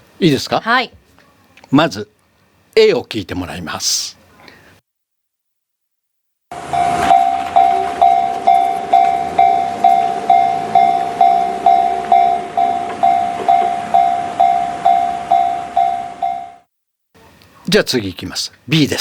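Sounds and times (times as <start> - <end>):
level-crossing warning bell: 6.5 - 16.7.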